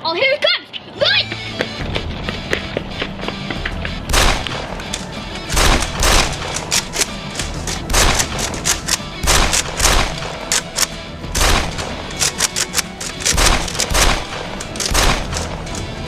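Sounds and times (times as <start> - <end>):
background music: 0.0 - 16.0
gunfire shots: 4.1 - 16.0.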